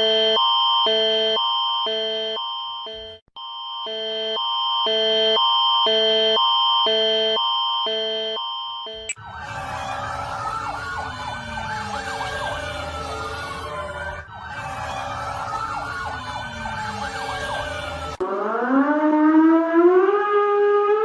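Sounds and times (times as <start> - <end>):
siren wailing: 3.9 - 21.0
quick siren sweeps: 8.9 - 21.0.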